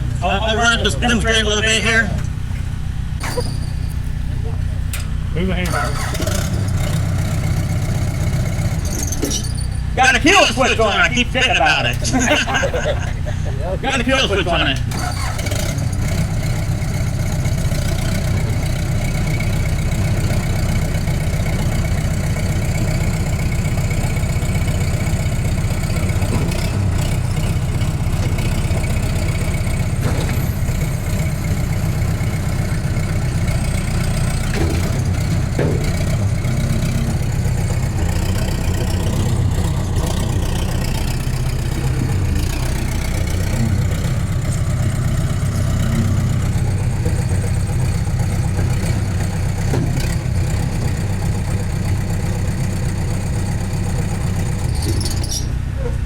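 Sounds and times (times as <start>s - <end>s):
diesel engine running: 0.0s - 56.0s.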